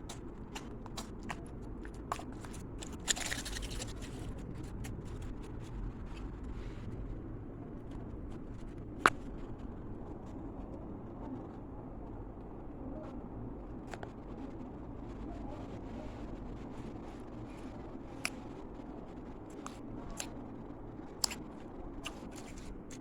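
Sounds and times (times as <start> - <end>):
scratchy rustle: 0.0 - 5.8
low background hum: 0.0 - 23.0.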